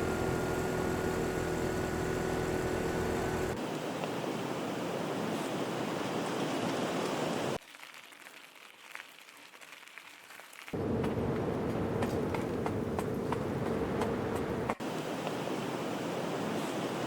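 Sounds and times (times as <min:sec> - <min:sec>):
low steady hum: 0:00.0 - 0:03.6
rushing water: 0:00.0 - 0:09.0.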